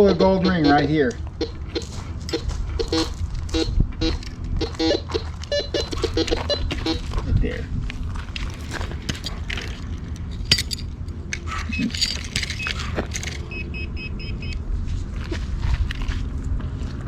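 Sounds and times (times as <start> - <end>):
metal detector beeps: 0.0 - 7.2, 11.7 - 14.6
scraping through dirt and gravel: 0.5 - 13.5.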